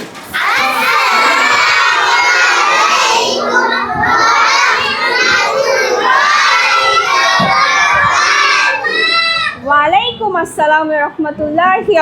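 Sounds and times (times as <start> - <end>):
children shouting in chorus: 0.3 - 9.6.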